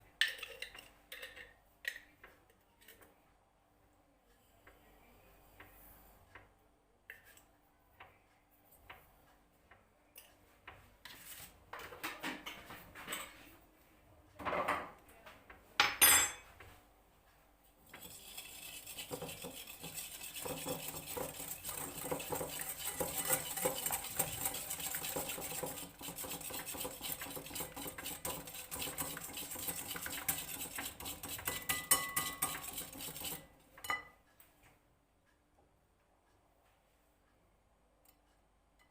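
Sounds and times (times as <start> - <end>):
utensils and dishes clinking: 15.8 - 16.5, 17.9 - 34.2
whisking in a bowl: 17.8 - 33.6.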